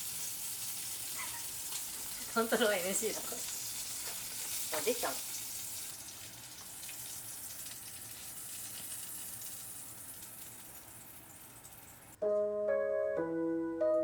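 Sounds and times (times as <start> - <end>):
food sizzling in hot oil: 0.0 - 12.2
piano music: 12.2 - 14.0.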